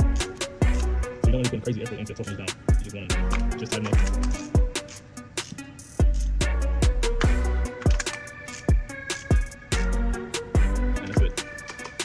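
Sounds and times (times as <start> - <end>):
kick-drum beat: 0.0 - 1.6, 2.5 - 4.9, 6.0 - 8.1, 8.7 - 11.6.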